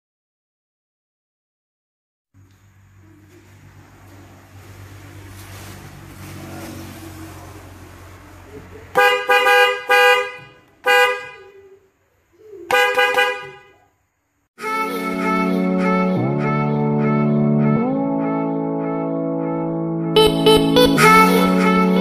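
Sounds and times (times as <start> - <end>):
car horn honking: 8.9 - 11.6, 12.7 - 13.9.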